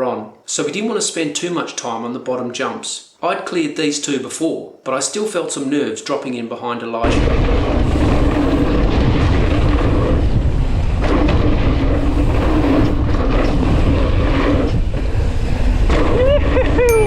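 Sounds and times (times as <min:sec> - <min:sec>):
wind on microphone: 0:07.3 - 0:16.6.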